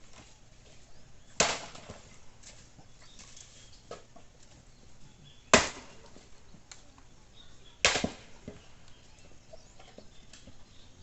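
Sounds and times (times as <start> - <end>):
axe striking firewood: 1.4 - 2.1, 5.5 - 6.0, 7.8 - 8.6.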